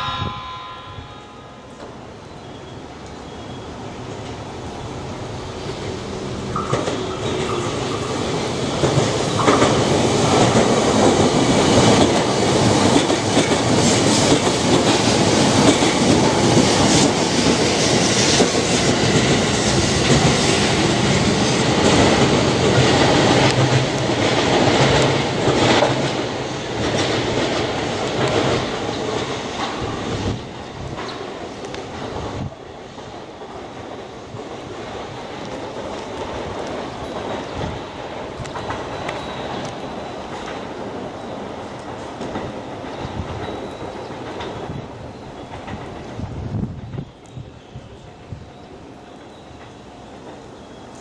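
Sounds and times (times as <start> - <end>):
train wheels clattering: 5.7 - 51.0.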